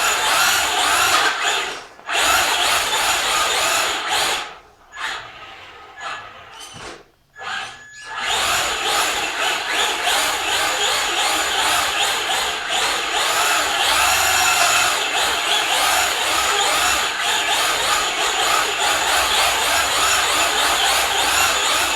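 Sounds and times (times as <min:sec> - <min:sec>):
electric motor whining: 0:08.2 - 0:21.9
tyres running on indoor floor: 0:08.3 - 0:21.9.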